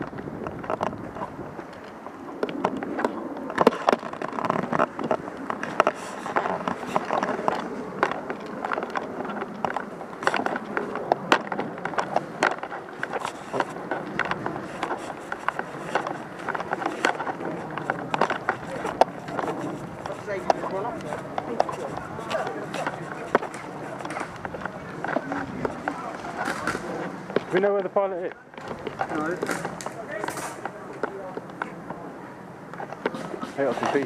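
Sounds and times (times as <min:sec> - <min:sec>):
rustling and scuffing: 0:03.7 - 0:27.9.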